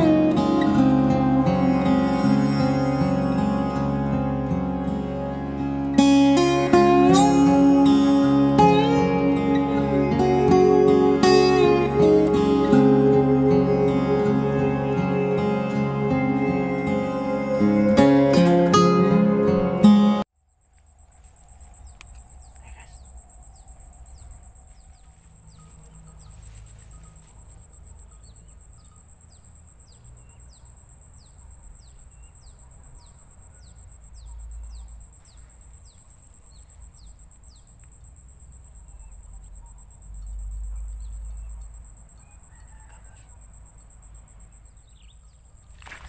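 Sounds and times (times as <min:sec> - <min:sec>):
high-pitched hum: 0:00.0 - 0:20.2
bird chirping: 0:21.7 - 0:37.9, 0:44.4 - 0:45.6.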